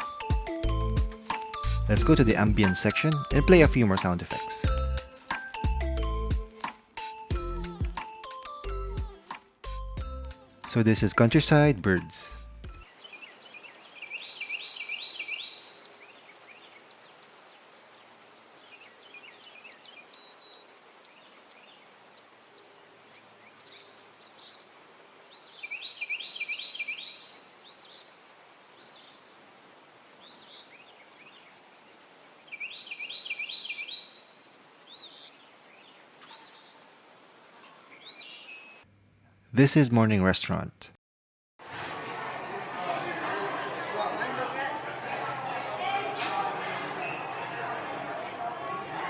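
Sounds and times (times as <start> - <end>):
faint background hiss: 12.8 - 40.9
birds chirping and singing: 12.9 - 17.4, 25.4 - 28.2, 32.5 - 34.2, 37.9 - 38.6.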